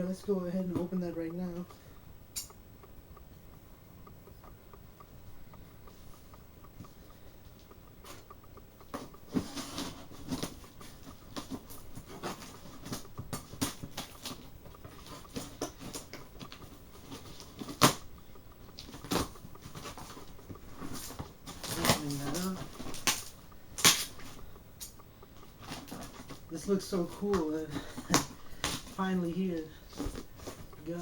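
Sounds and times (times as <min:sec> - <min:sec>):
packaging rustling: 0:08.9 - 0:24.5, 0:25.3 - 0:31.0
sharp packaging snaps: 0:21.0 - 0:25.0.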